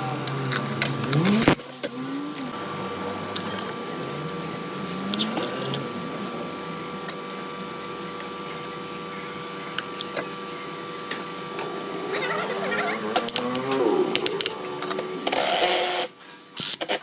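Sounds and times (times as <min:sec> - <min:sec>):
chainsaw engine revving: 0:00.6 - 0:06.3, 0:11.5 - 0:16.1.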